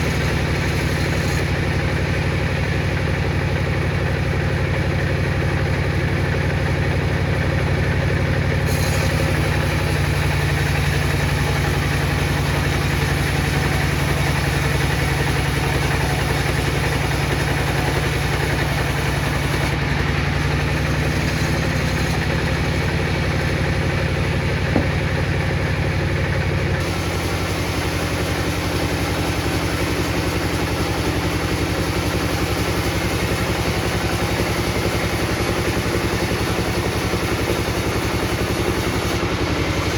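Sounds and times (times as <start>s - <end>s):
machine humming: 10.4s - 30.8s.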